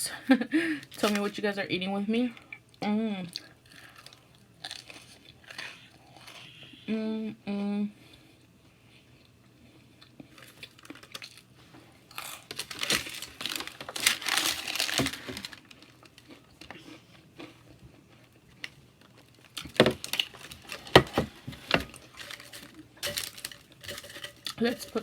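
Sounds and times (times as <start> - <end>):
snack bag crinkling: 10.3 - 11.5, 12.1 - 25.0.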